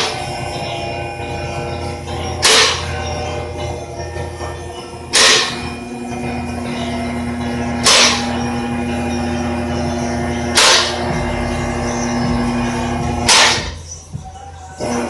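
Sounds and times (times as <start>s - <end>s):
held music tone: 0.0s - 15.0s
sharp whip-like hit: 2.4s - 2.8s, 5.2s - 5.6s, 7.8s - 8.3s, 10.6s - 11.0s, 13.3s - 13.8s.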